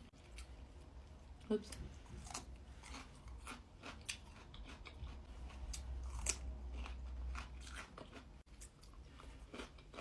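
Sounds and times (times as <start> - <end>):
person chewing: 2.0 - 10.0.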